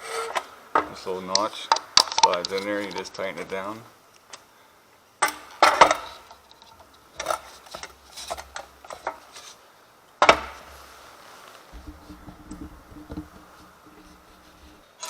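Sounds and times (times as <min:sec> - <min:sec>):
metal parts clicking and knocking: 0:01.3 - 0:03.6.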